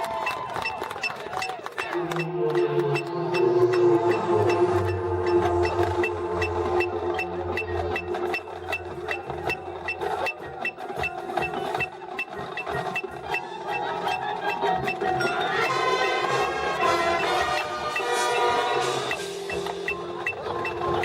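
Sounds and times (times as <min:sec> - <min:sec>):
ticking percussion pulse: 0:00.0 - 0:21.0
marching band music: 0:00.8 - 0:21.0.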